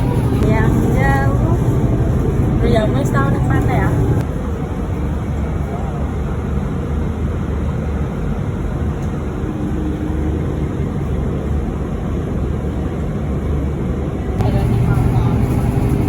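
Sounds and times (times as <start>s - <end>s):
vehicle rumble from on board: 0.0s - 4.3s, 14.4s - 16.0s.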